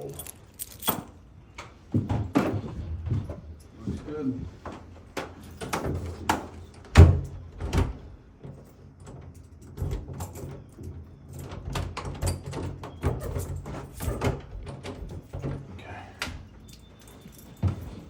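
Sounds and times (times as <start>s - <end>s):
doors clicking and knocking: 5.1s - 18.0s.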